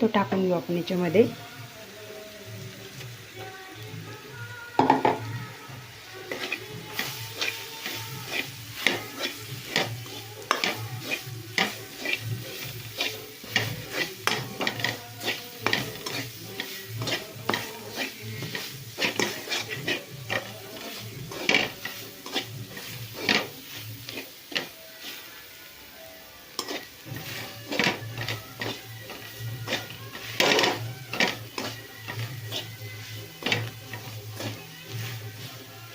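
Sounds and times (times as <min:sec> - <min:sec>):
light sizzle: 0:00.0 - 0:35.9
utensil clinking against pan: 0:27.7 - 0:32.6.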